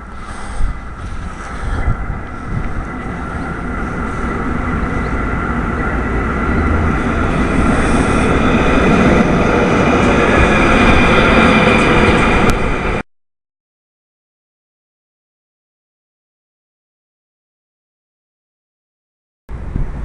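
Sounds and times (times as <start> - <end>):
tram running with whining motor: 0.0 - 13.0.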